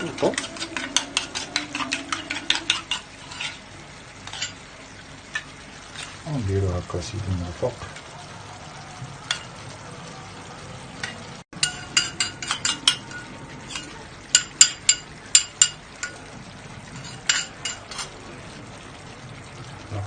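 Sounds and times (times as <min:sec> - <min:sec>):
utensil clinking against dish: 0:00.0 - 0:03.6, 0:11.0 - 0:16.2, 0:17.0 - 0:18.2
faint sizzle: 0:00.0 - 0:20.0.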